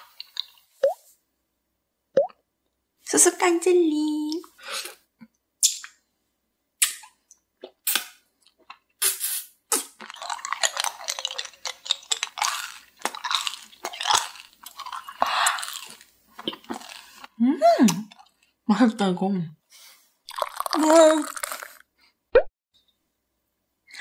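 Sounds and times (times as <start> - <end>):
crisp bites: 9.7 - 16.0, 20.3 - 21.8
crunchy candy chewing: 9.7 - 17.4, 20.3 - 21.9.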